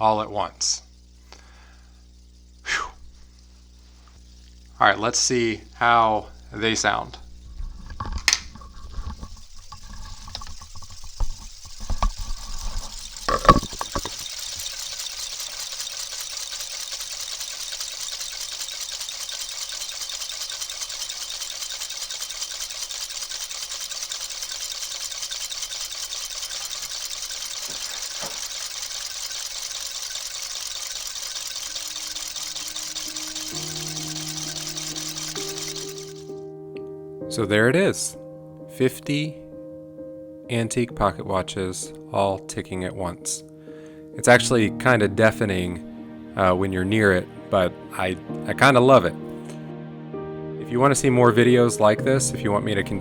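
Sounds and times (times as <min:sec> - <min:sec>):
pocket watches ticking: 0:09.0 - 0:36.4.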